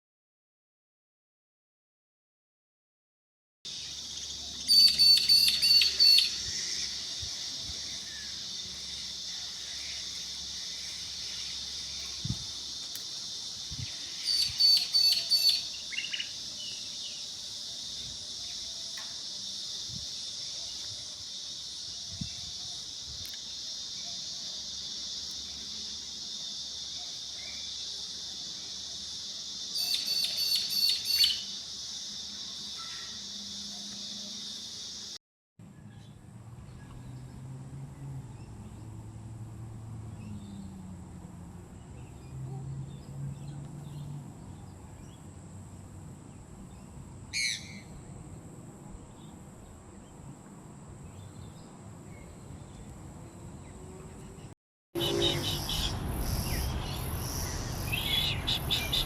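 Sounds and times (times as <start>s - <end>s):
rapid repeated bird calls: 3.7s - 19.3s, 26.9s - 31.8s, 55.0s - 59.0s
high insect drone: 3.7s - 35.2s, 55.0s - 59.0s.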